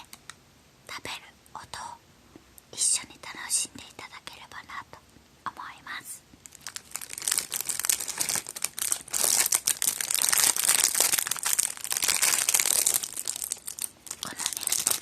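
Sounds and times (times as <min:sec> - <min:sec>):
plastic wrapper crinkling: 0:06.4 - 0:15.0.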